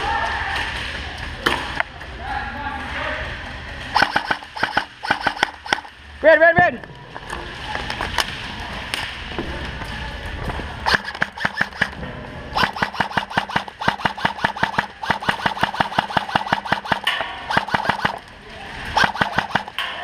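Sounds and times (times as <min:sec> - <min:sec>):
airsoft guns firing: 0:03.9 - 0:06.0, 0:10.8 - 0:12.0, 0:12.6 - 0:18.3, 0:18.9 - 0:20.0.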